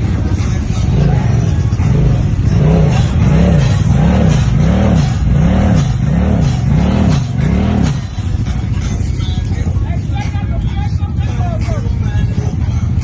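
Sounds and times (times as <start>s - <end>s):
vehicle engine revving: 0.0s - 9.0s.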